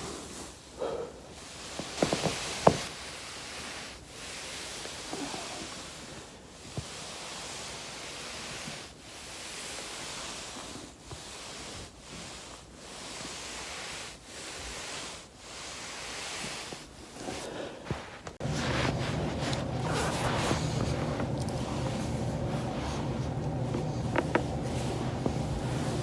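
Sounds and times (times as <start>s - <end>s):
foam roller rolling: 14.6s - 26.0s.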